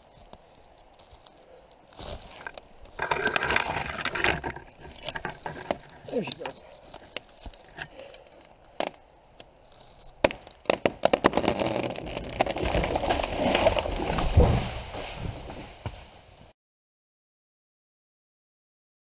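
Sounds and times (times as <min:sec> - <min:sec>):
wood cracking and snapping: 0:00.2 - 0:16.2
tree crashing down: 0:10.2 - 0:16.4.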